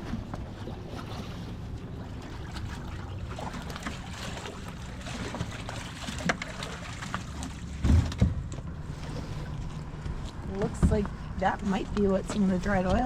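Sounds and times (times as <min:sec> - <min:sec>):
water sloshing and dribbling: 0:00.0 - 0:13.0
wind rumble on microphone: 0:07.7 - 0:13.0.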